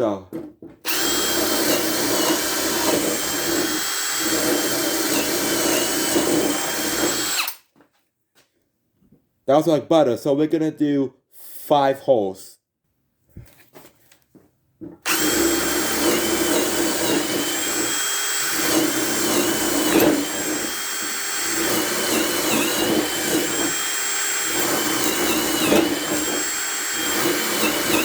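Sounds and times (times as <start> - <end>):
hammer drill whining: 0.8 - 7.6, 15.0 - 28.0.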